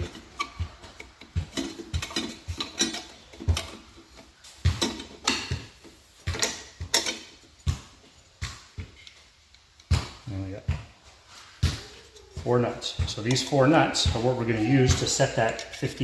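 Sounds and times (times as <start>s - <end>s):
sharp metal clicks and knocks: 0.0s - 7.8s.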